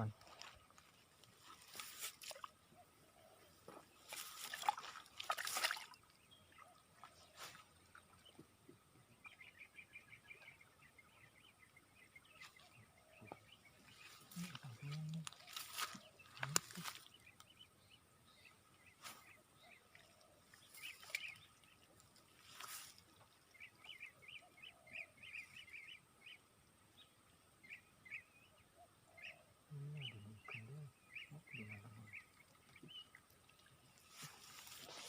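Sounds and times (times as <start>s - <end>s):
small birds chirping: 0.0s - 35.0s
low murmurs: 14.0s - 15.6s, 29.7s - 32.2s.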